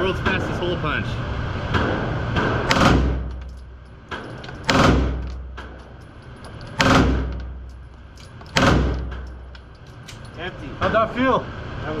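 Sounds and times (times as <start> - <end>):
gunshots with echoing decay: 1.8 - 3.4, 4.1 - 5.9, 6.8 - 7.6, 8.5 - 9.5.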